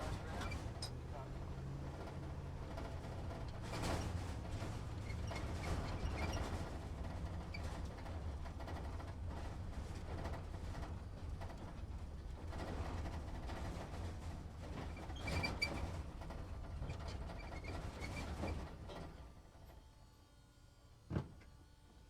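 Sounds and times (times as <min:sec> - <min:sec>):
truck engine rumbling: 0:00.0 - 0:07.4.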